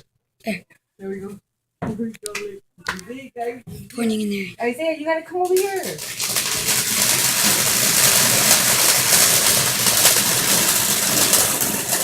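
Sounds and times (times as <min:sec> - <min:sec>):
crackling pops: 0:05.4 - 0:12.0
firework spraying sparks hissing: 0:05.6 - 0:12.0.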